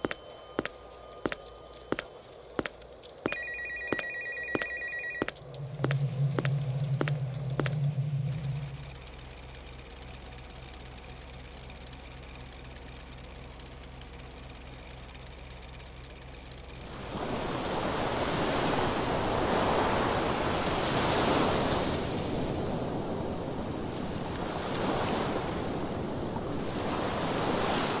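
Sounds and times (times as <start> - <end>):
car engine idling: 5.3 - 17.4.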